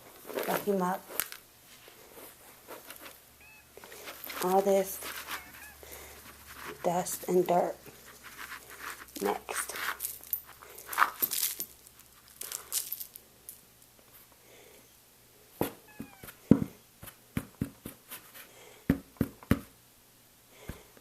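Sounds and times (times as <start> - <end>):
rustling: 0.0 - 14.4.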